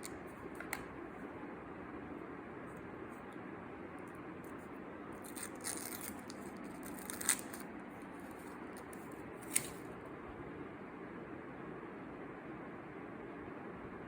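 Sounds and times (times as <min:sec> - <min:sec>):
packaging rustling: 0:05.2 - 0:09.8.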